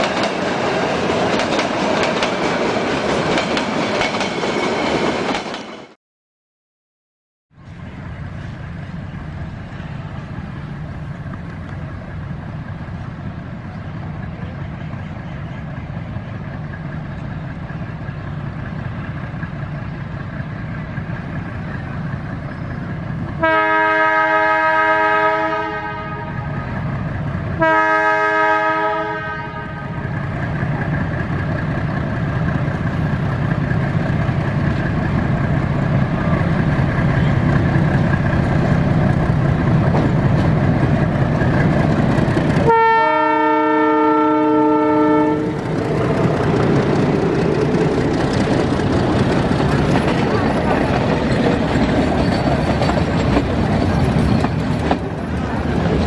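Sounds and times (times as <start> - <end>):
train rumbling: 0.0 - 6.0, 7.5 - 56.0
train horn blasts: 23.4 - 26.8, 27.6 - 30.2, 42.6 - 45.7.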